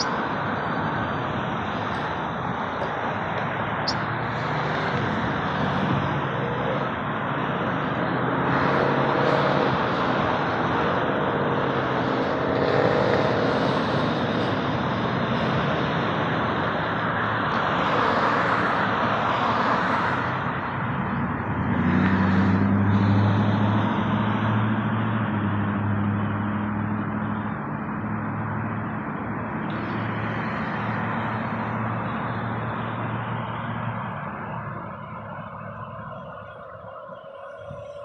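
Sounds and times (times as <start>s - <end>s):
jet engines roaring in flight: 0.0s - 38.0s
low steady drone: 26.3s - 38.0s.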